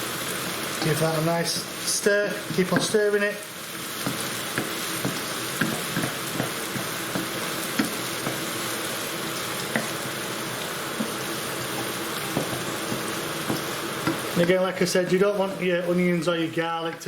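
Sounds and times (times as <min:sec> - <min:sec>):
onions sizzling in hot oil: 0:00.0 - 0:16.5
spoon tapping against pan: 0:04.0 - 0:08.7, 0:09.7 - 0:10.0, 0:11.0 - 0:14.4.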